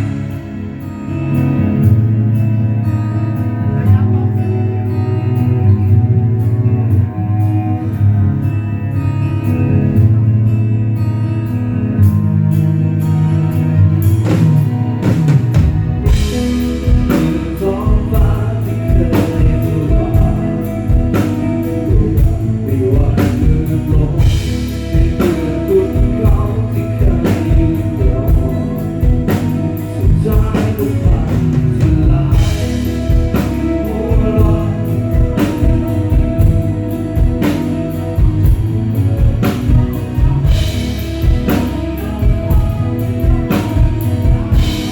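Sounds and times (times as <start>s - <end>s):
band playing: 0.0s - 44.9s
person singing: 13.0s - 44.9s
drum kit beat: 14.0s - 44.9s.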